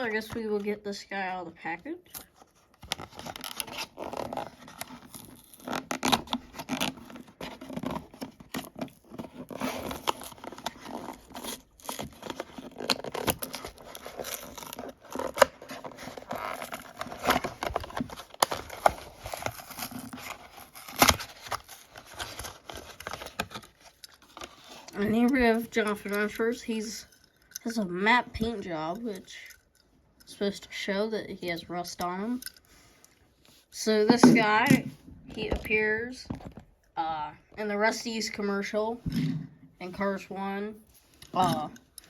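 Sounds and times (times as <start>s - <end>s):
plastic packaging crinkling: 2.3s - 26.2s.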